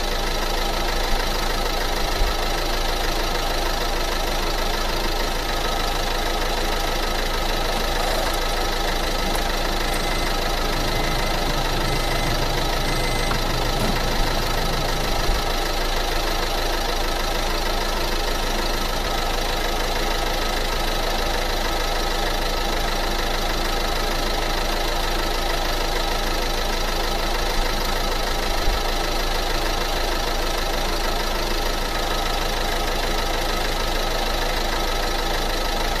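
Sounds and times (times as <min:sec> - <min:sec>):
motor humming: 0:07.7 - 0:15.6.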